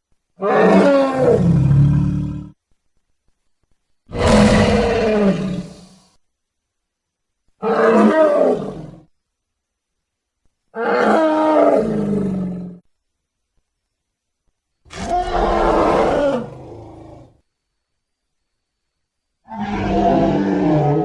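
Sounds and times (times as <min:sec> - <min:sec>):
monster roars: 0:04.1 - 0:06.0.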